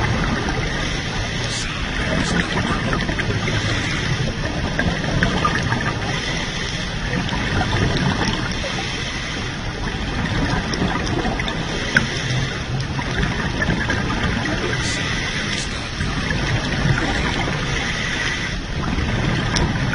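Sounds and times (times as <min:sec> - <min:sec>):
underwater bubbling: 0:00.0 - 0:19.9.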